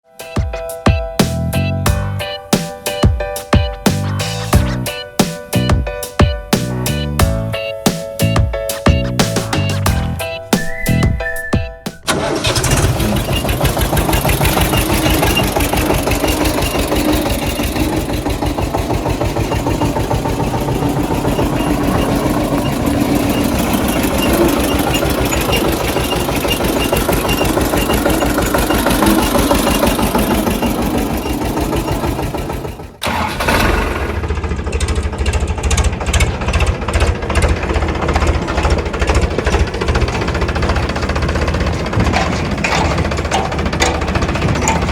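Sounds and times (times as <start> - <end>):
tractor engine running: 1.2 - 44.9
second engine with low beats: 12.1 - 44.9.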